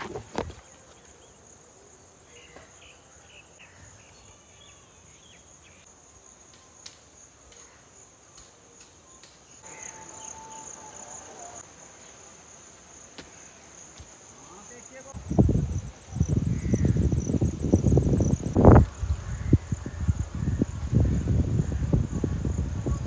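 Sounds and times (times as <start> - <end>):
insects trilling: 0.0 - 23.0
faint clicks and chirps: 6.5 - 9.6.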